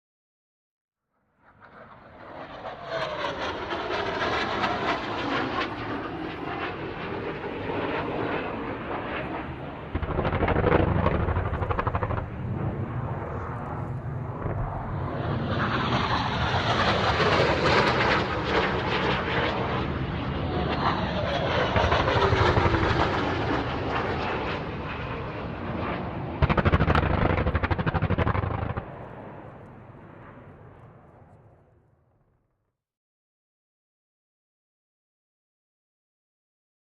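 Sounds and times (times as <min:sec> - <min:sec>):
jet aircraft flying over: 0:01.2 - 0:32.0
high jet whine falling in pitch: 0:08.6 - 0:17.2.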